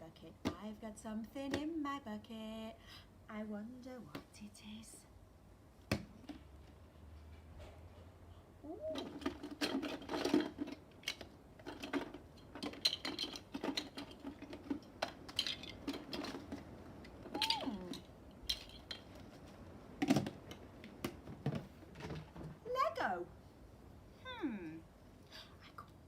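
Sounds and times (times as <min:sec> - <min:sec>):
plastic bricks clattering: 0:08.9 - 0:22.3.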